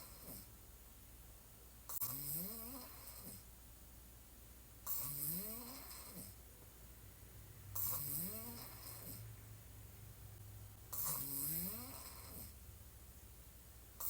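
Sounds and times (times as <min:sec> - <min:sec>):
woman snoring: 0:01.9 - 0:03.4, 0:04.9 - 0:06.4, 0:07.8 - 0:09.3, 0:10.9 - 0:12.6.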